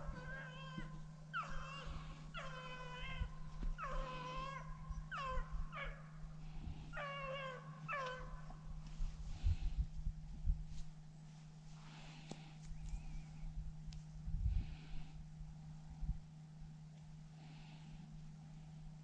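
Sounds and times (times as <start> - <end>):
hounds yelping: 0.0 - 8.7
steady low hum: 0.0 - 19.0.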